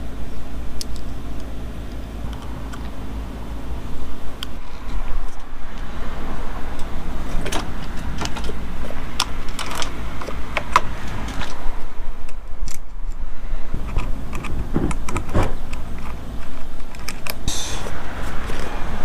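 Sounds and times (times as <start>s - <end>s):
steady low rumble: 0.0s - 19.0s
metallic clicks and rattles: 6.7s - 11.6s, 12.2s - 13.2s, 13.8s - 17.4s.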